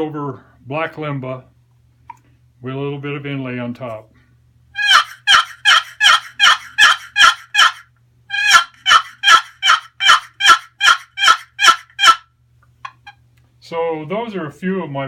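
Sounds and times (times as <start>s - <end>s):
turkey box call yelping: 4.8s - 12.3s.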